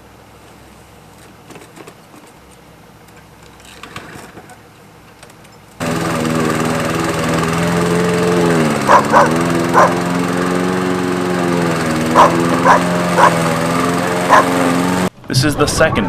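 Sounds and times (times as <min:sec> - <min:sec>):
lawn mower engine running: 0:05.8 - 0:15.3
dog barking: 0:08.9 - 0:10.0, 0:12.2 - 0:13.4, 0:14.3 - 0:14.6.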